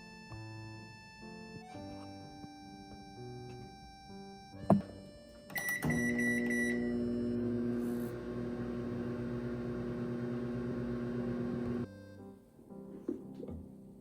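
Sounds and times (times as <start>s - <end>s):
microwave button beep: 5.5s - 11.8s
microwave humming: 5.5s - 11.9s.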